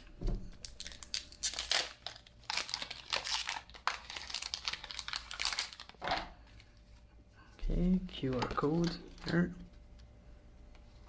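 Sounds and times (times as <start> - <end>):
foil wrapper crinkling and tearing: 0.6 - 6.1.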